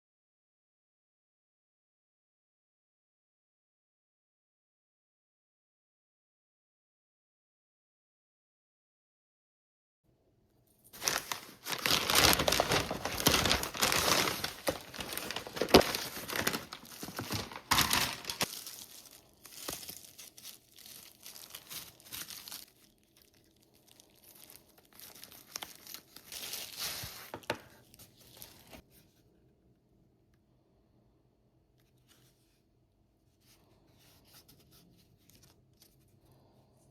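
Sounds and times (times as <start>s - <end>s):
packaging tearing and crinkling: 11.0s - 28.8s.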